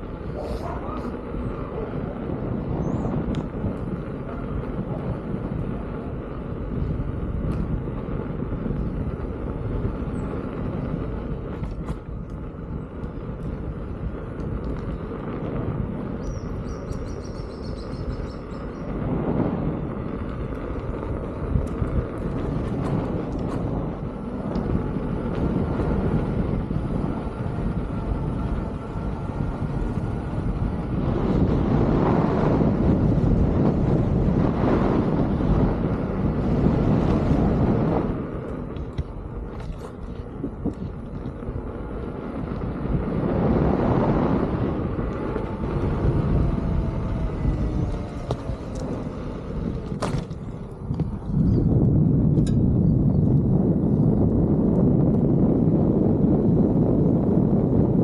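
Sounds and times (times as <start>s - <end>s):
rolling tyre noise: 0.0s - 58.0s
wind rumble on microphone: 0.0s - 58.0s.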